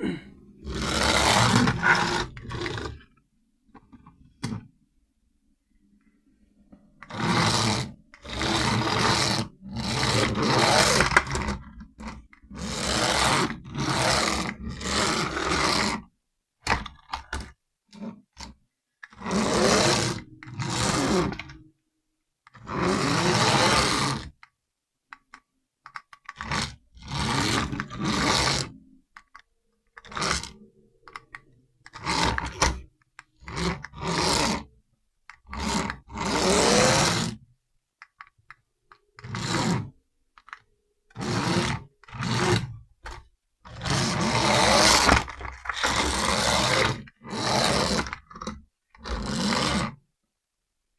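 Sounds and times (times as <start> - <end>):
toy tank motor bursts: 31.9 - 32.8, 35.4 - 37.4.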